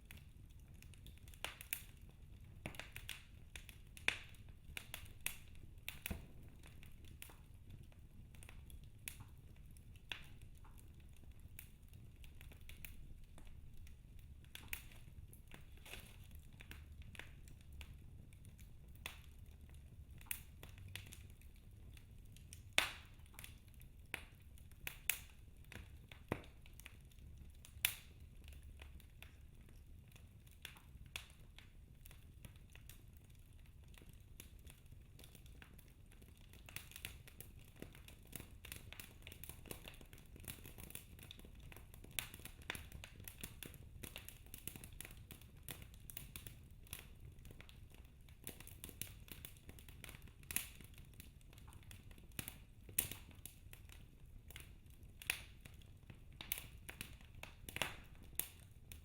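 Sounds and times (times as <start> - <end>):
wood fire crackling: 0.0 - 59.0
faint low rumble: 4.5 - 23.4.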